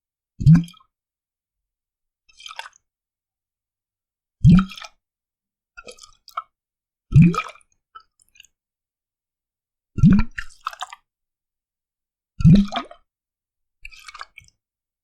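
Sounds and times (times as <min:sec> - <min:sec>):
water glugging in glass bottle: 0:00.4 - 0:00.8, 0:10.0 - 0:10.4, 0:12.4 - 0:13.0
small splashes and drips: 0:02.4 - 0:02.9, 0:10.0 - 0:11.0.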